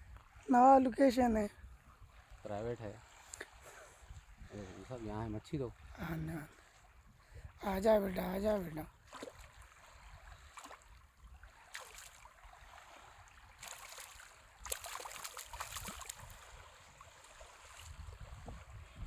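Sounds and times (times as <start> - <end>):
faint water sounds: 0.0 - 19.0
water splashes: 0.0 - 19.0
wind rumble on microphone: 3.9 - 6.3, 15.6 - 19.0.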